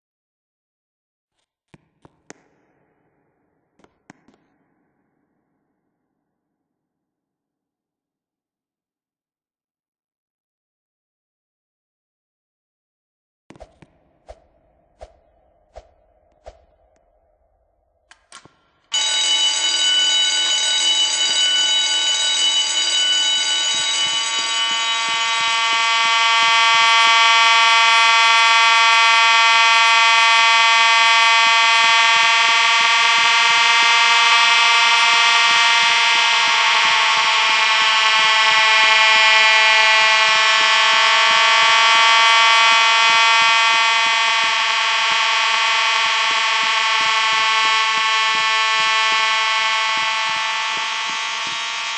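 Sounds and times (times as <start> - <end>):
buzzing alarm tone: 18.9 - 51.9.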